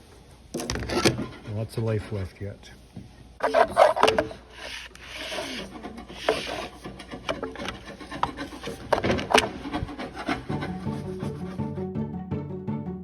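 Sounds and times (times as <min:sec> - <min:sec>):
hand scraping on engine parts: 0:03.4 - 0:11.4.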